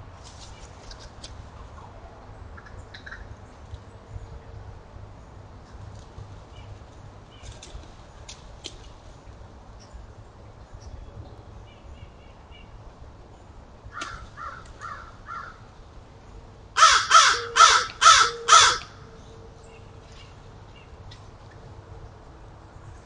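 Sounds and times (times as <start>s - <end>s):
crow cawing: 13.9s - 15.6s, 16.8s - 19.0s.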